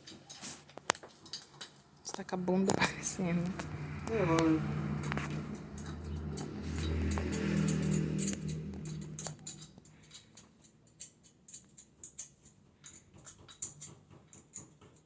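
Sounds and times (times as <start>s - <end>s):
low rumble: 2.6s - 10.0s
metallic clicks of hand tools: 2.7s - 15.0s.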